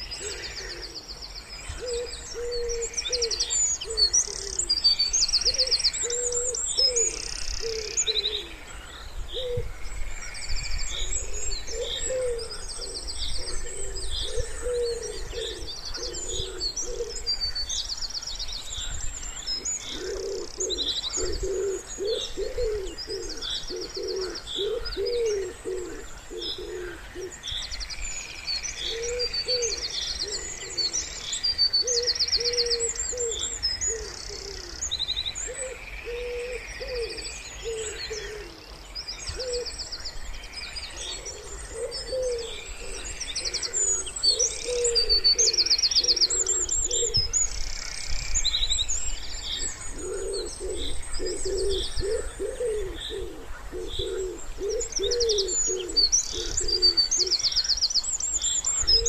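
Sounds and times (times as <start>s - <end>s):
songbirds chirping and trilling: 0.0s - 59.0s
wood pigeon cooing: 0.2s - 1.1s, 1.7s - 4.7s, 5.4s - 8.6s, 11.2s - 17.4s, 19.6s - 27.4s, 28.8s - 31.0s, 31.7s - 34.8s, 35.5s - 38.6s, 39.3s - 39.7s, 41.0s - 47.4s, 49.9s - 57.4s.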